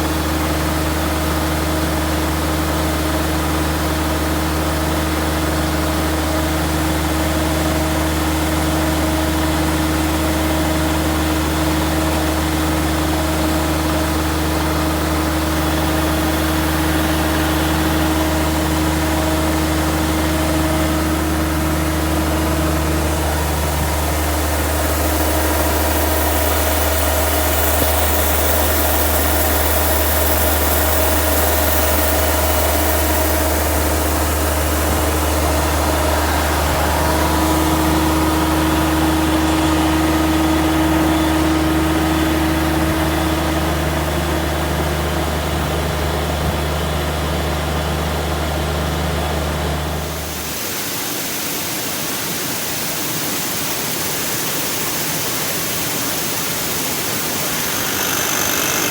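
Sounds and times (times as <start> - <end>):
combine harvester engine droning: 0.0 - 50.6, 56.1 - 58.9
engine whine: 0.2 - 50.6, 55.5 - 58.9
even hiss: 55.3 - 58.9.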